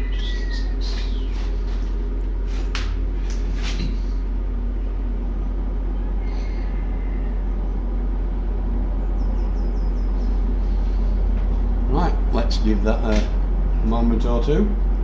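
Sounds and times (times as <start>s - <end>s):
faint bird chirp: 0.0s - 1.5s.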